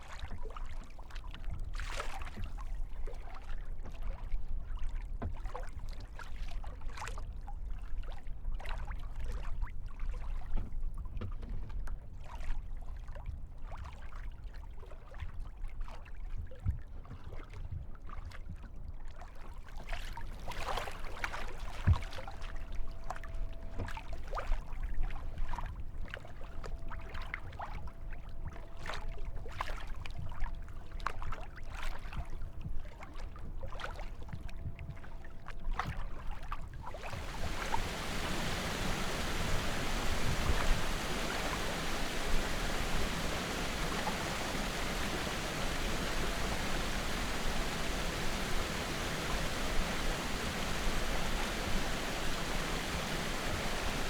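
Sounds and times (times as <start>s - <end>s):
faint steady tone: 36.9s - 54.0s
paddle splashing in water: 36.9s - 54.0s.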